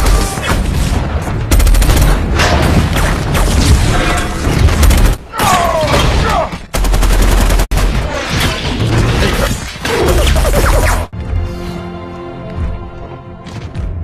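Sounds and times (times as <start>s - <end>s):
orchestral score: 11.1s - 14.0s.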